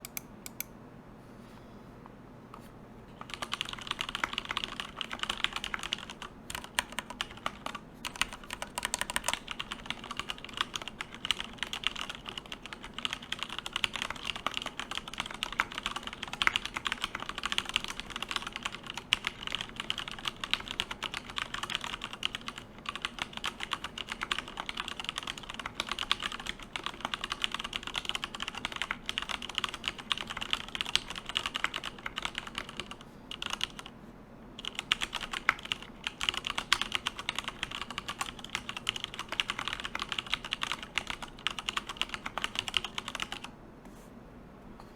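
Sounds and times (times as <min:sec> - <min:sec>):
fast typing on mechanical keyboard: 0:03.2 - 0:33.9, 0:34.6 - 0:43.5.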